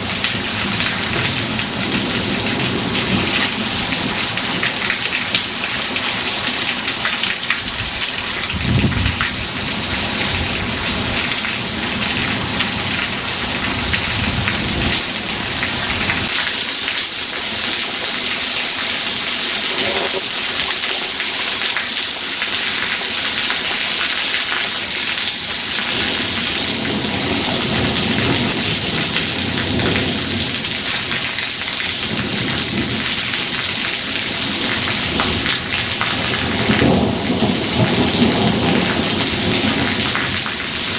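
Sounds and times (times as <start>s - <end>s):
heavy rain: 0.0s - 40.9s
thunder rumbling: 34.6s - 40.9s.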